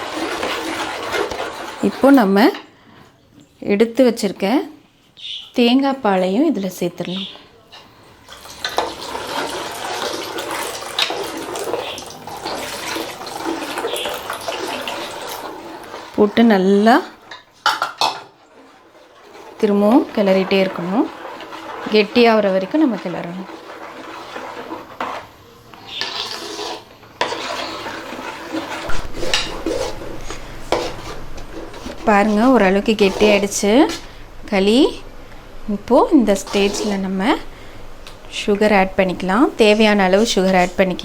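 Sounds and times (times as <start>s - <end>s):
utensil stirring thick batter: 0.0s - 2.4s, 7.2s - 41.0s
liquid pouring into a pan: 8.3s - 16.2s.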